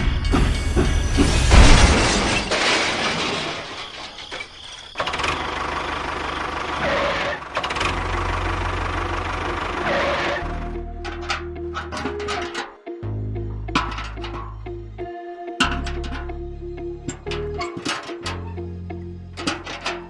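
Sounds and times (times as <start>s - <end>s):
engine running: 5.0s - 15.0s.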